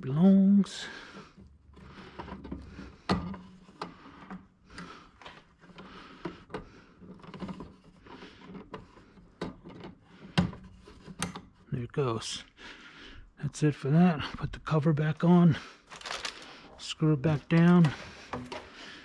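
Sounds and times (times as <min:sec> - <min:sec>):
cable rustling: 0:15.8 - 0:19.0.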